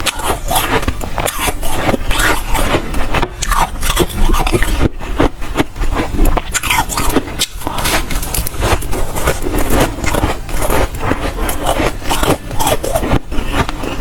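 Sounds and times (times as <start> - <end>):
frost being chewed crunching: 0.0 - 14.0.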